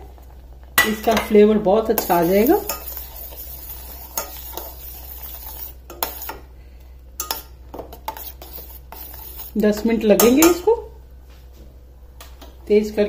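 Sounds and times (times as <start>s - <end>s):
spoon stirring liquid in pan: 0.7s - 6.5s, 7.2s - 10.7s.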